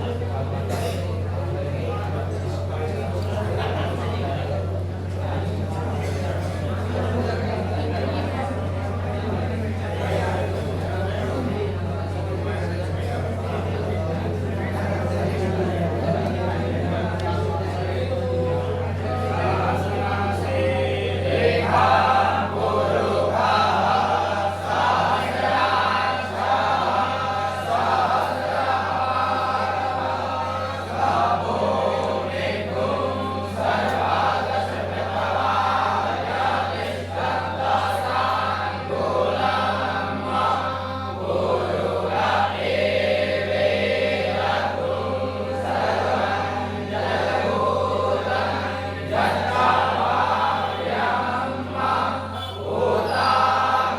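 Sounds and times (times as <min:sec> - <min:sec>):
steady low hum: 0:00.0 - 0:53.9
group chanting in unison: 0:17.7 - 0:53.9.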